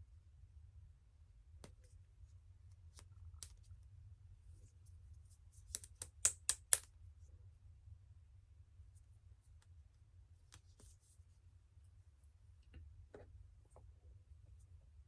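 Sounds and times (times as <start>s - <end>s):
low steady hum: 0.0s - 15.0s
small sharp clicks and taps: 5.7s - 6.9s.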